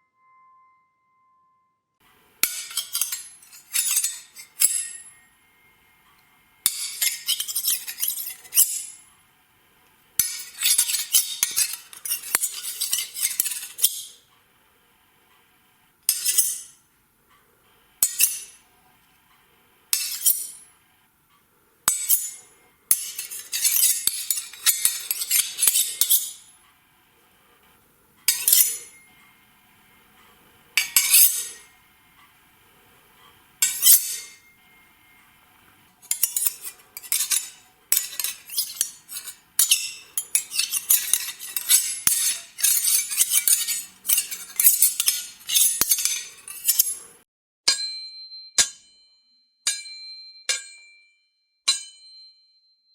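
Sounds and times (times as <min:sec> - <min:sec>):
sword blades striking and scraping: 0:02.4 - 0:05.2, 0:06.6 - 0:09.0, 0:10.2 - 0:14.1, 0:16.1 - 0:16.8, 0:18.0 - 0:18.6, 0:19.9 - 0:20.7, 0:21.9 - 0:26.5, 0:28.3 - 0:29.1, 0:30.8 - 0:31.7, 0:33.6 - 0:34.5, 0:36.0 - 0:47.2.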